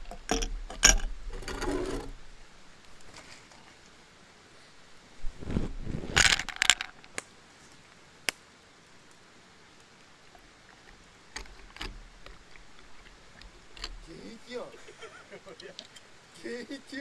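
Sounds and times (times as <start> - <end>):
faint handling noise: 2.8 - 4.0, 5.2 - 7.9.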